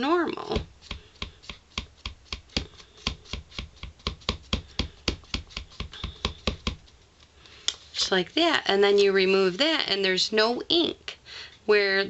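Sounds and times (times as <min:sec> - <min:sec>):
rubber stamp tapping on ink pad: 0:00.5 - 0:06.9.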